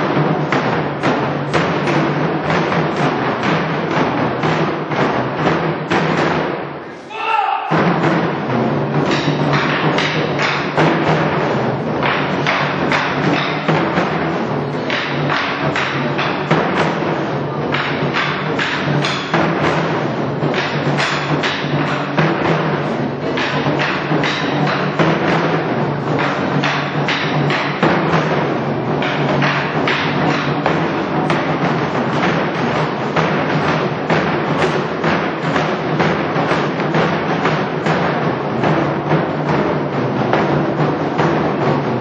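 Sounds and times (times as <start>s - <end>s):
drum ensemble playing: 0.0s - 42.0s.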